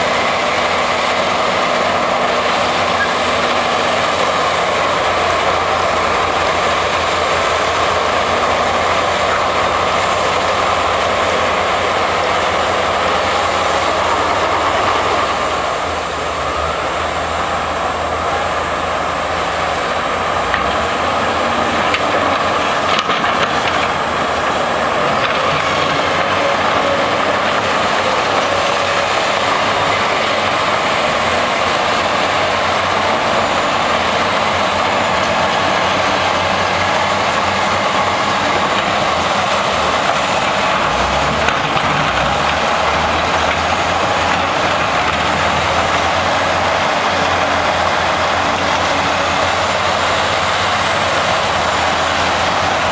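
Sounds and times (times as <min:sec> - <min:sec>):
excavator engine and hydraulics: 0:00.0 - 0:52.9.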